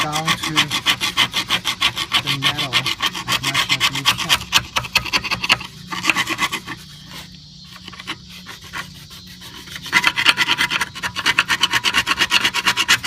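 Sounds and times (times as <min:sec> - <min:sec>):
chisel scraping metal: 0:00.0 - 0:13.0.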